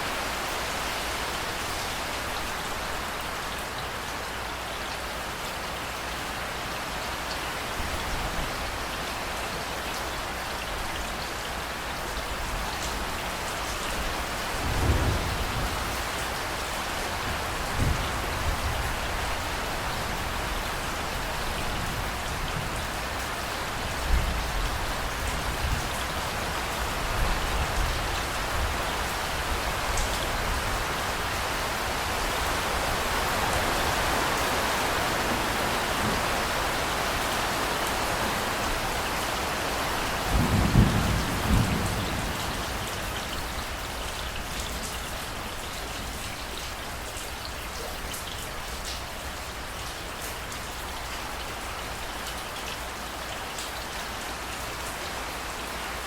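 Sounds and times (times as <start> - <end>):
heavy rain falling: 0.0 - 56.0
thunder rumbling: 40.3 - 43.7.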